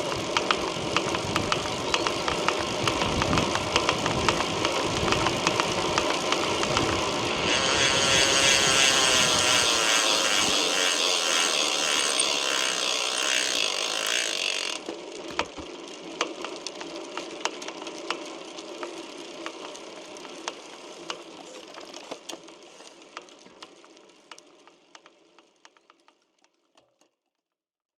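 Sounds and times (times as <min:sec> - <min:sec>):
spinning wheel hiss: 0:00.0 - 0:14.9
bicycle freehub buzzing: 0:00.0 - 0:26.8.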